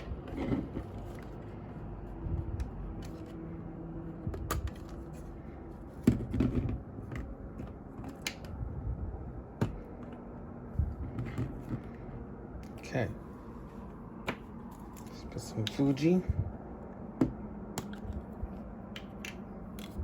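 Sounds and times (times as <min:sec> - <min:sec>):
sharp plastic snaps: 0:08.0 - 0:08.6, 0:18.9 - 0:20.0.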